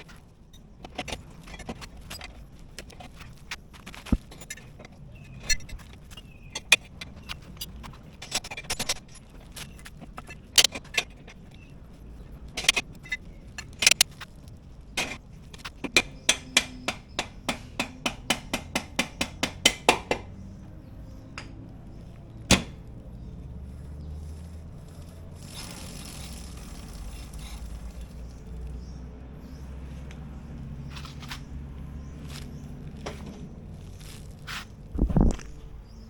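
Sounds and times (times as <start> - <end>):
sharp metallic clicks: 12.6 - 20.4.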